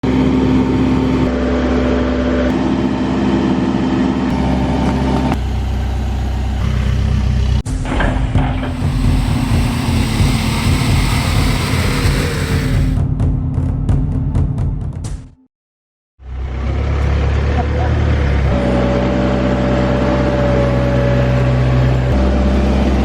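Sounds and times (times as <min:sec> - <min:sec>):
diesel engine running: 0:08.5 - 0:13.0.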